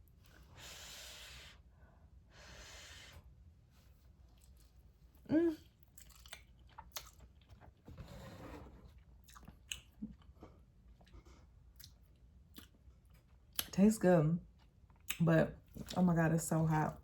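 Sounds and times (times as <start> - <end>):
person chewing noodles: 4.3 - 7.8, 9.0 - 13.7.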